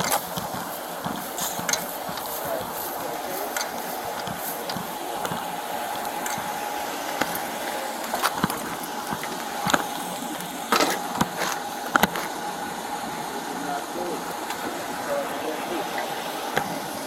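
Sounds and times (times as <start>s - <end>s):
sharp clicks and knocks: 0.0s - 2.8s, 3.4s - 12.4s
steady hiss: 0.0s - 17.0s.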